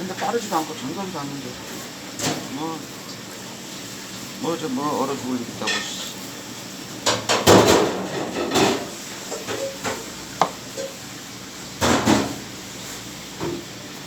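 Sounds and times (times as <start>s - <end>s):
knocks and clatter on cutting table: 11.8s - 12.4s.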